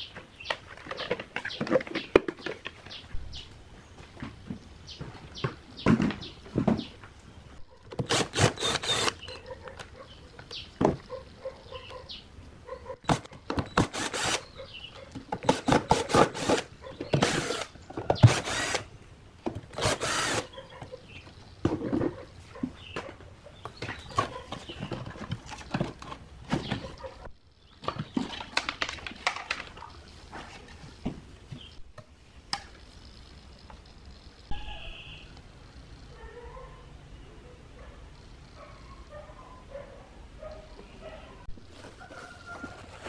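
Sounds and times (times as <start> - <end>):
power tool bursts: 8.0 - 9.3, 13.8 - 14.4, 15.5 - 18.9, 19.8 - 20.5.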